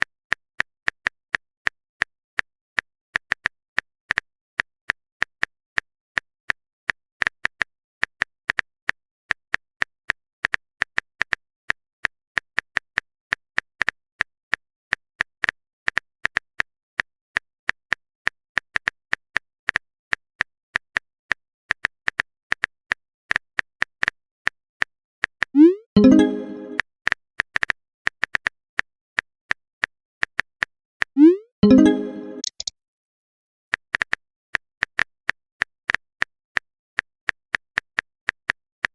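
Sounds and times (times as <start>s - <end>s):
upward gliding alert sound: 25.6s - 26.8s, 31.2s - 32.7s
smartphone keyboard typing clicks: 31.7s - 32.7s.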